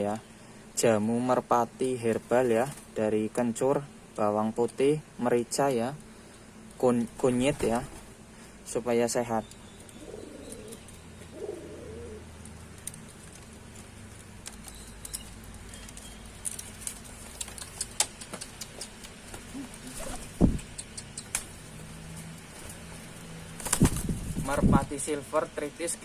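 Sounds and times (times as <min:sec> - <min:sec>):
pigeons cooing: 0:09.8 - 0:12.5, 0:17.2 - 0:21.5.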